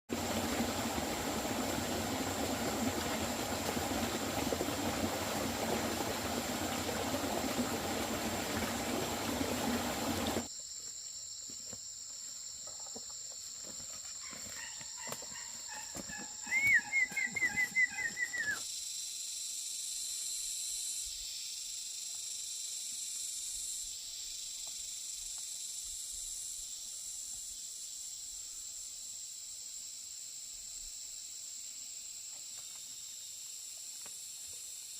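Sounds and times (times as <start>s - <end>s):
high insect drone: 10.4s - 34.9s.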